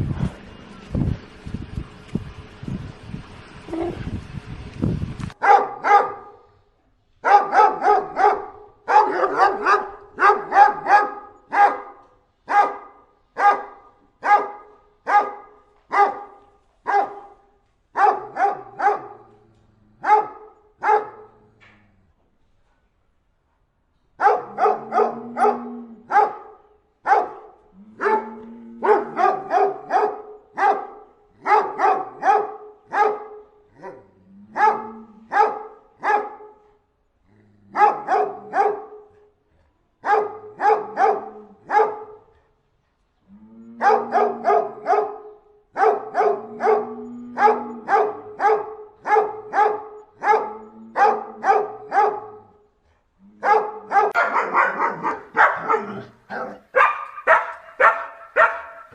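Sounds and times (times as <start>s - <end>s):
dog barking: 5.4s - 6.5s, 7.2s - 19.3s, 20.0s - 21.4s, 24.2s - 36.7s, 37.8s - 39.3s, 40.0s - 42.3s, 43.8s - 52.6s, 53.4s - 58.9s.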